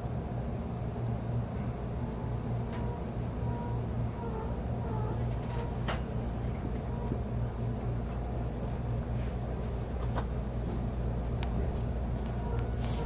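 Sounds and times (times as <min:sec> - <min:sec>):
electric train hum: 0:00.0 - 0:13.0.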